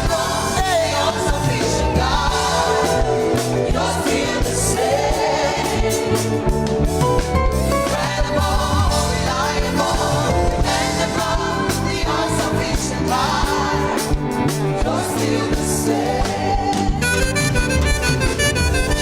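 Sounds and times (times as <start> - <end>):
gospel singing with instruments: 0.0 - 19.0.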